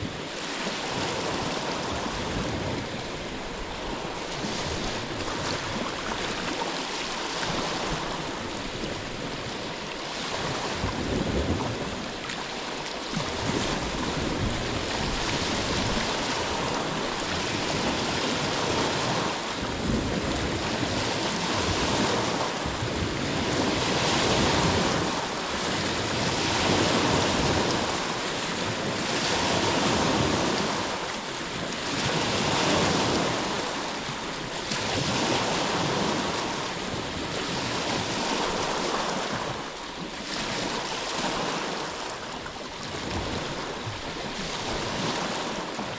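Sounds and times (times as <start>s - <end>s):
ocean waves washing ashore: 0.0s - 45.9s.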